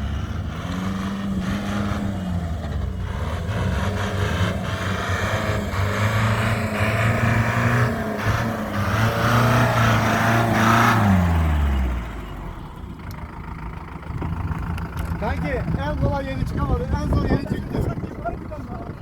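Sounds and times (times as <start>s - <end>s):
jeep engine revving hard: 0.0s - 12.4s.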